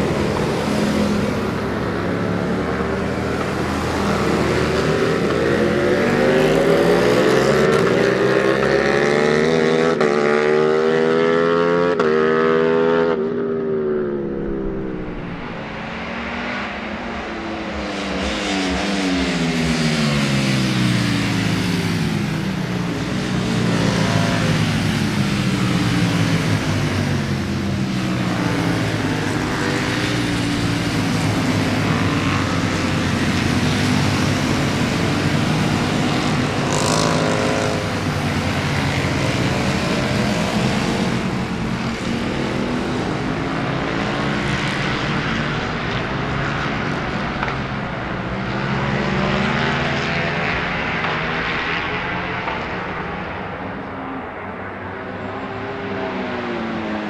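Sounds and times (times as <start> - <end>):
motorcycles racing past at high revs: 0.0 - 57.0.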